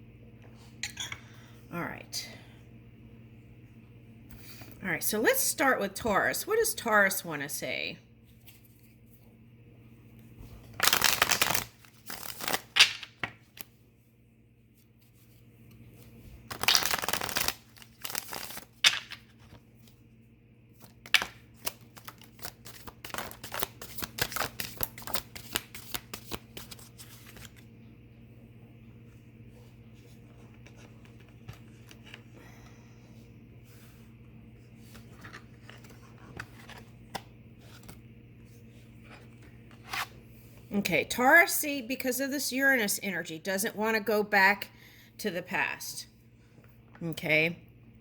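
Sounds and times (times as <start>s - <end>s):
faint steady hum: 0.0s - 48.0s
cards being shuffled: 10.6s - 13.7s, 16.0s - 20.0s, 20.8s - 27.7s, 34.8s - 38.0s.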